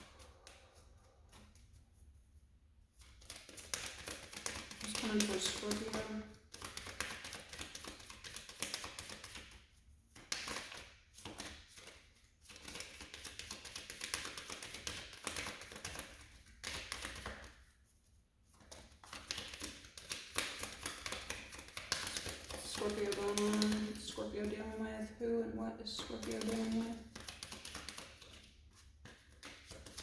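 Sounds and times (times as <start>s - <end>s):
cards shuffled on a table: 3.0s - 9.6s, 10.2s - 17.6s, 18.4s - 24.1s, 26.2s - 30.0s.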